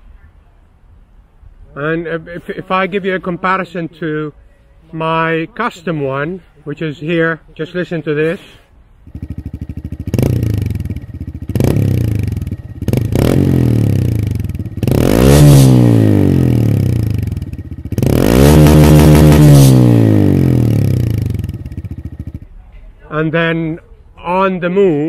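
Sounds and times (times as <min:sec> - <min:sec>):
motorcycle engine revving: 0:09.0 - 0:22.6.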